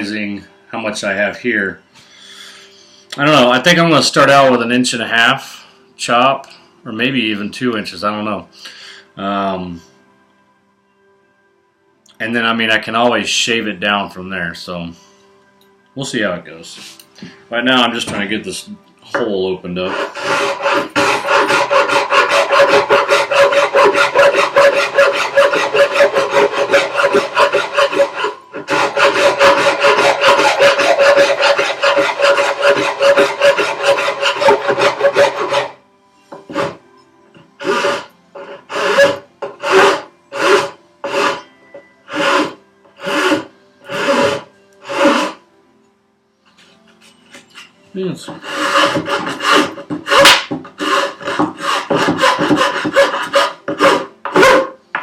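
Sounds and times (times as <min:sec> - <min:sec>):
hand file rasping wood: 0:19.8 - 0:36.8, 0:37.6 - 0:41.4, 0:42.1 - 0:45.4, 0:48.3 - 0:55.0.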